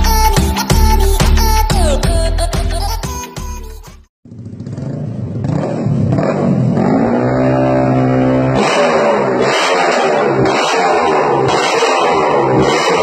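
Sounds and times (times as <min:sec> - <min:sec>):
motorcycle engine revving: 0:04.2 - 0:13.0.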